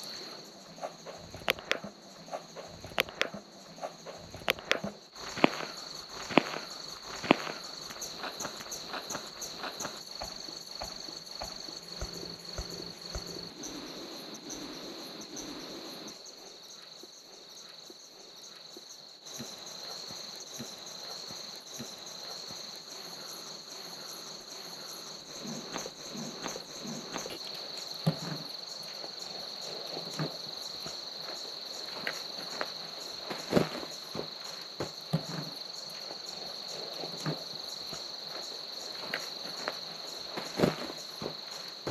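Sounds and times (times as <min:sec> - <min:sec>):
crickets trilling: 0:00.0 - 0:41.9
rustling: 0:29.7 - 0:41.9.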